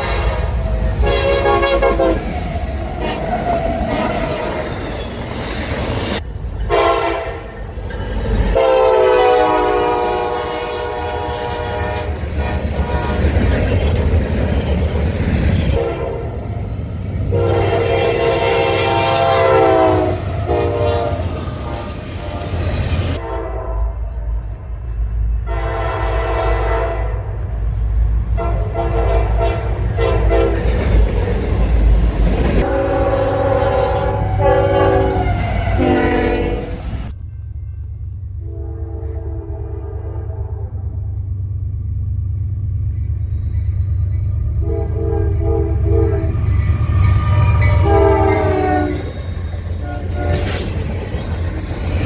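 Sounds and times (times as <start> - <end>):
locomotive air horn blasts: 0.0 - 2.3, 6.7 - 7.5, 8.6 - 13.4, 15.8 - 16.5, 17.3 - 22.0, 23.2 - 24.2, 25.4 - 27.4, 28.3 - 30.8, 32.6 - 37.2, 38.4 - 41.0, 44.6 - 50.9
train rumble: 0.0 - 52.0.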